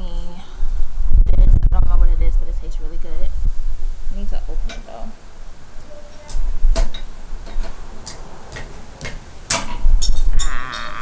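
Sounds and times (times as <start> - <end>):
low rumbling handling noise: 0.0 - 11.0.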